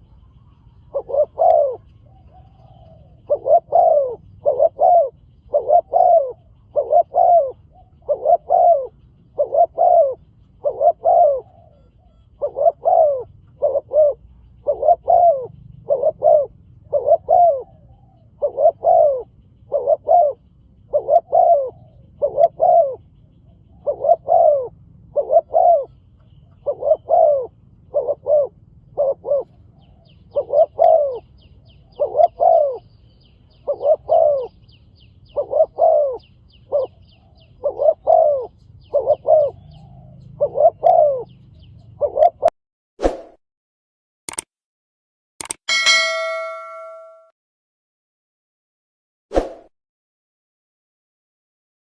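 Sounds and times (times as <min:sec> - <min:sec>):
small bird chirping: 0:00.0 - 0:24.6
dove cooing: 0:00.0 - 0:32.9, 0:33.5 - 0:42.5.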